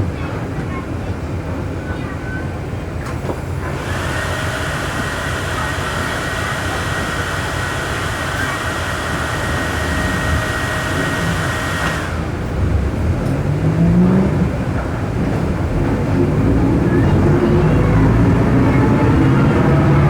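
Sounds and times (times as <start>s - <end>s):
bus engine and road noise rumbling: 0.0s - 20.0s
high whine of differential: 3.3s - 14.6s.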